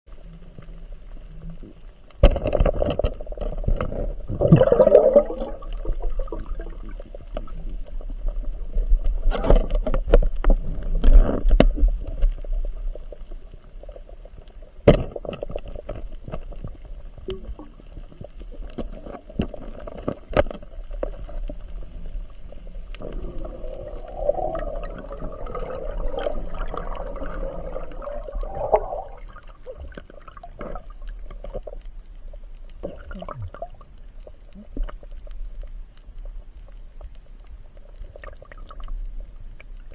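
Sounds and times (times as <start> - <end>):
water gurgling and sloshing: 0.1 - 39.9
low rumble: 21.5 - 30.2.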